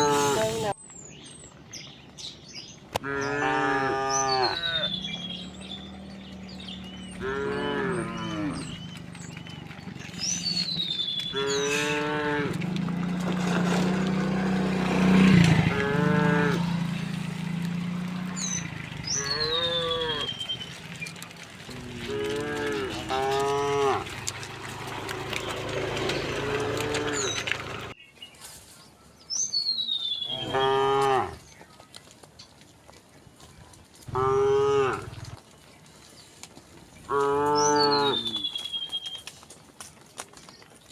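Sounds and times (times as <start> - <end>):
cows mooing: 0.0 - 0.7, 3.0 - 27.9, 30.2 - 31.4, 34.1 - 35.4, 37.1 - 38.6.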